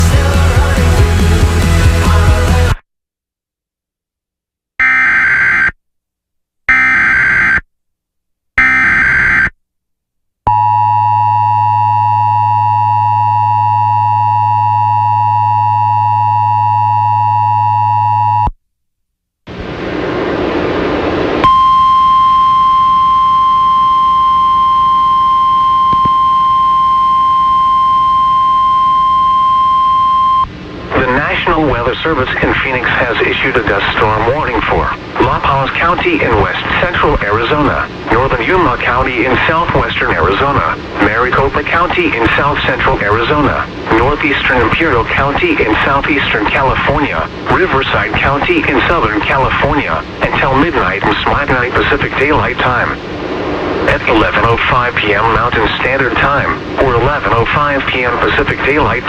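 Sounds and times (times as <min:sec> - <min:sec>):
screeching digital data tones: 0:04.8 - 0:05.8, 0:06.7 - 0:07.6, 0:08.6 - 0:09.5
steady alarm tone: 0:04.8 - 0:05.8, 0:06.7 - 0:07.6, 0:08.6 - 0:09.5, 0:21.4 - 0:31.4
two-tone attention signal: 0:06.7 - 0:07.6, 0:21.4 - 0:31.2
radio static: 0:30.8 - 0:59.0.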